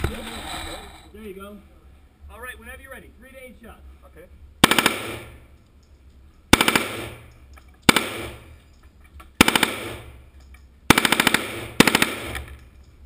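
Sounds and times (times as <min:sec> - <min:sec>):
submachine gun bursts: 0:10.9 - 0:12.6.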